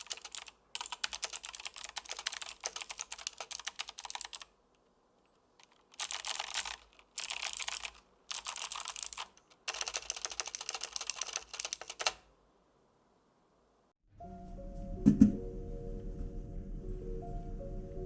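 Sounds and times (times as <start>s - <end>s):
mechanical keyboard typing clicks: 0.0s - 4.5s, 5.6s - 12.3s.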